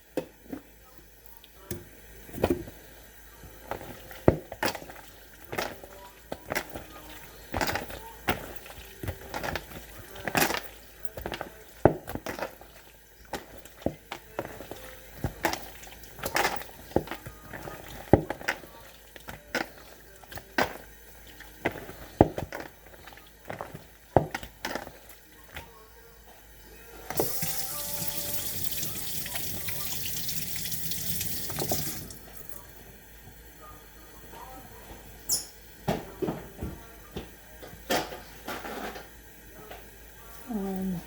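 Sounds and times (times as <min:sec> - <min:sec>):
kitchen tap running: 0:01.4 - 0:25.6, 0:27.0 - 0:32.8
wet slaps of mixing chicken: 0:03.7 - 0:25.7.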